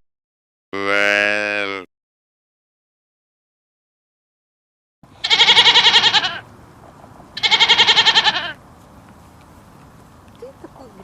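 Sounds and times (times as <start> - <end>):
animal bleating: 0.8 - 1.9, 5.2 - 6.4, 7.4 - 8.6.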